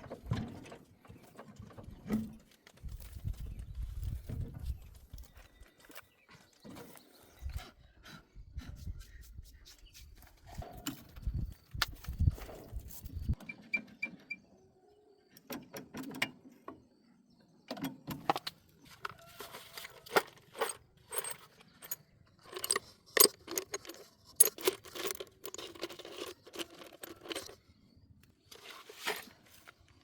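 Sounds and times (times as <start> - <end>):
small metal objects clinking: 20.0 - 27.6.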